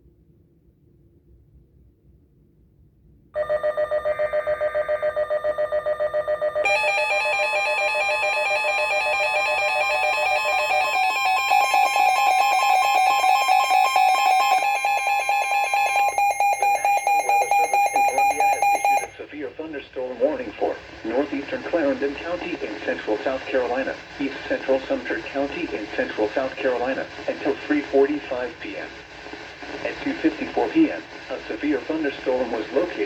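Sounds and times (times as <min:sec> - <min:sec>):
rapid pulsing electronic beeping: 0:06.7 - 0:19.2.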